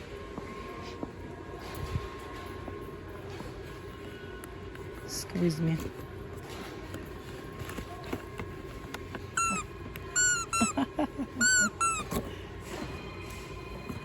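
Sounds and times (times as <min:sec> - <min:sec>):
squeeze toy squeaking: 0:09.4 - 0:12.2.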